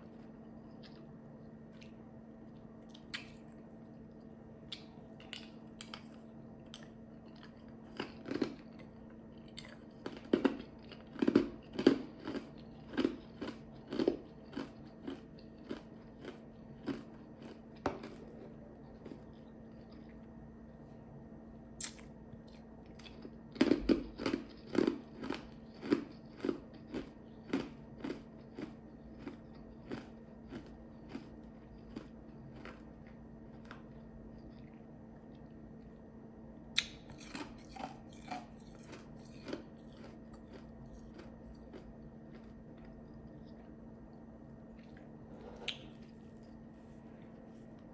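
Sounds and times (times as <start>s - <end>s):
faint hum: 0.0s - 47.9s
ice chips crunched between teeth: 9.6s - 18.2s, 22.9s - 33.8s.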